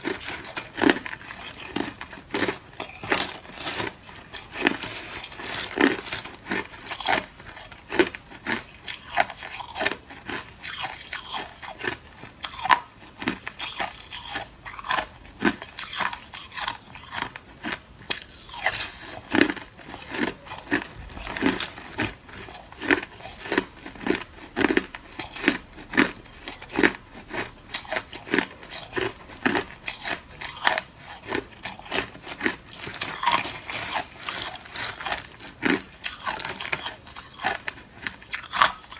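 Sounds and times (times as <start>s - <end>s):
chewing crushed ice crunches: 0.0s - 38.9s.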